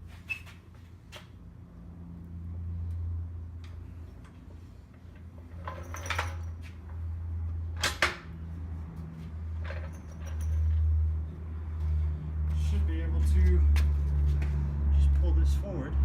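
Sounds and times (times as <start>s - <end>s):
metal parts clinking and scraping: 5.4s - 6.7s, 9.5s - 10.9s.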